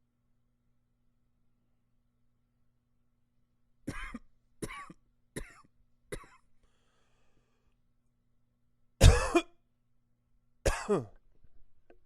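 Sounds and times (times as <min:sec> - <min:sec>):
man coughing: 0:03.9 - 0:06.4, 0:09.0 - 0:09.6, 0:10.6 - 0:11.2.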